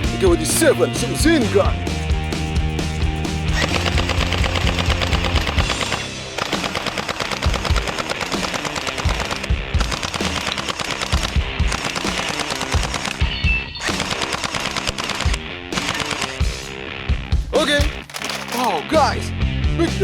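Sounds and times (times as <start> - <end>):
toy gun automatic fire: 3.6 - 13.2, 13.9 - 16.5, 17.6 - 19.0.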